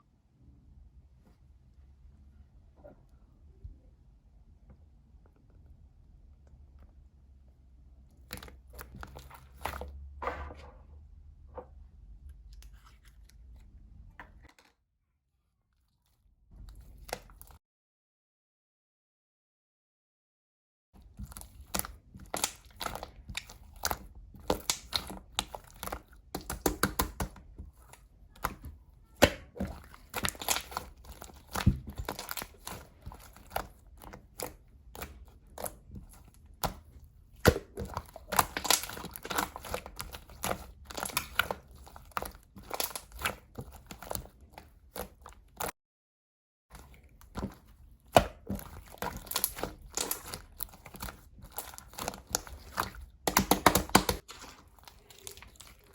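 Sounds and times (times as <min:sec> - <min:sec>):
slime clicking and popping: 0:21.4 - 0:27.4, 0:36.6 - 0:44.2, 0:48.1 - 0:55.9.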